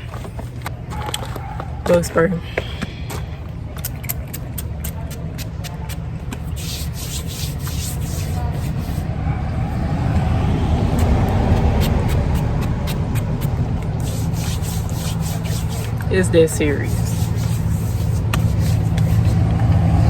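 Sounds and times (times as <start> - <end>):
low microphone rumble: 8.0 - 20.0.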